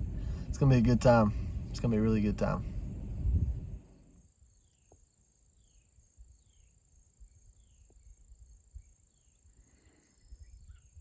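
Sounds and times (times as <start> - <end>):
crickets trilling: 0.0 - 11.0.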